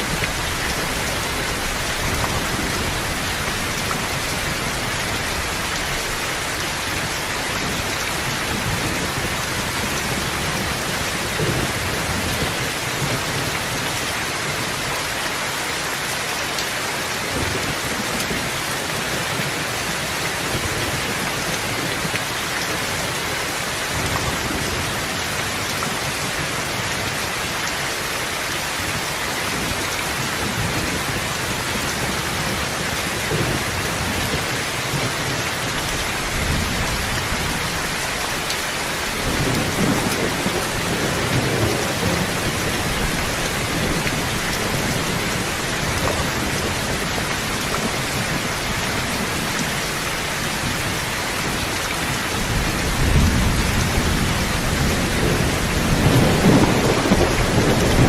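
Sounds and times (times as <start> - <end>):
steady rain: 0.0 - 58.0
low thunder rumbling: 30.4 - 58.0.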